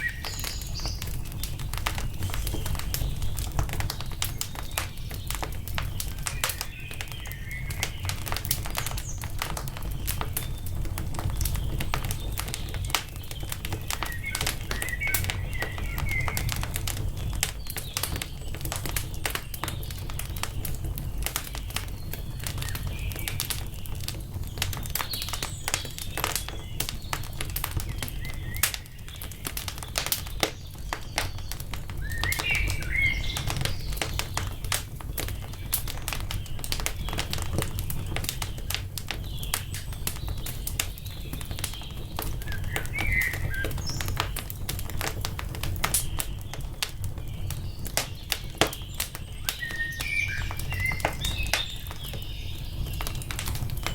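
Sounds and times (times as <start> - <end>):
small birds chirping: 0.0 - 53.9
wood fire crackling: 0.0 - 53.9.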